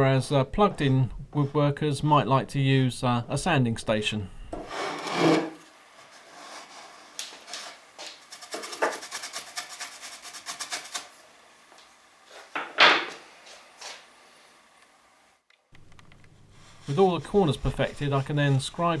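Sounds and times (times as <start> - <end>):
sandpaper scraping wood: 4.6 - 11.4, 16.6 - 19.0.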